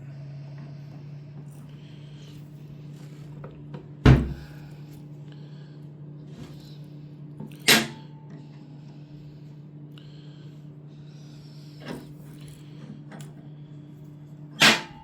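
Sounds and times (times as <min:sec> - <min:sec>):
steady low hum: 0:00.0 - 0:15.0
loud knocks on metal: 0:04.0 - 0:04.5.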